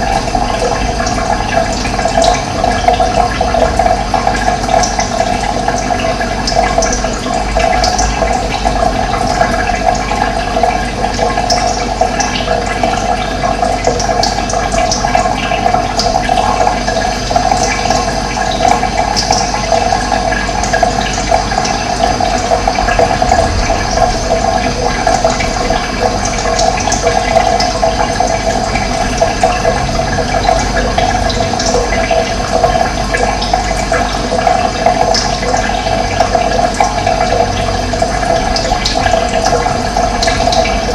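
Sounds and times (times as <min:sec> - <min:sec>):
running water rushing: 0:00.0 - 0:40.9.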